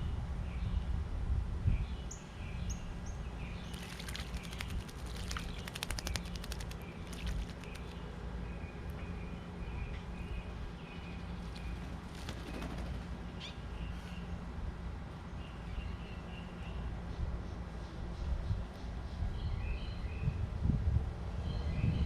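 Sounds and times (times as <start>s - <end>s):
small birds chirping: 1.8s - 14.5s
bird splashing in water: 3.6s - 8.0s.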